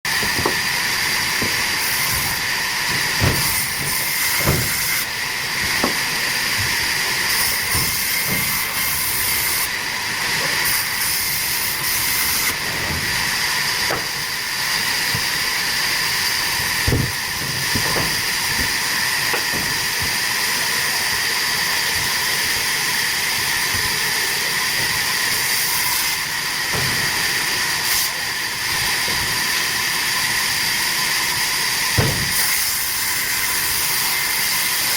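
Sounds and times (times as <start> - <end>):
saw cutting wood: 0.1 - 34.9
short knocks: 1.4 - 5.0, 13.8 - 14.3, 16.6 - 20.2, 32.0 - 32.4.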